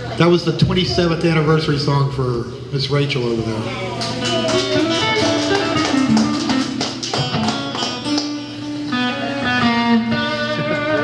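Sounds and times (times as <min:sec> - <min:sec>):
guitar melody in plucked notes: 0:03.7 - 0:11.0.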